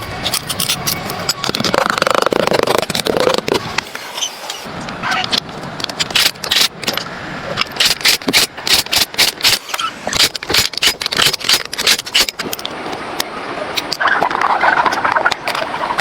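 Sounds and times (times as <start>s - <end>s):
sharp clicks and knocks: 0.0s - 4.6s, 5.2s - 12.8s.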